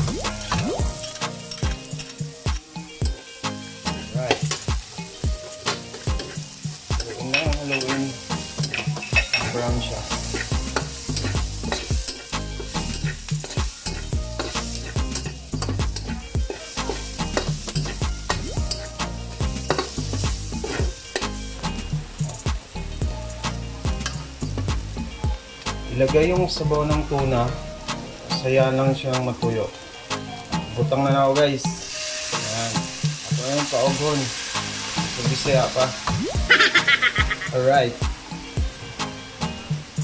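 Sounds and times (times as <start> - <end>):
food sizzling in hot oil: 0.0 - 26.2, 27.4 - 40.0.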